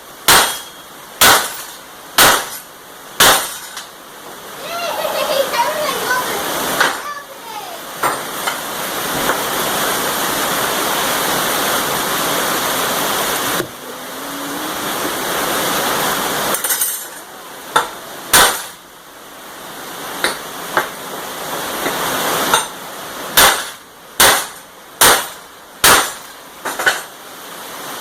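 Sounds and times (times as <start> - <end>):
steady rushing noise: 0.0 - 28.0
sledgehammer striking steel: 0.2 - 2.6, 3.2 - 3.9, 17.7 - 18.8, 23.4 - 27.1.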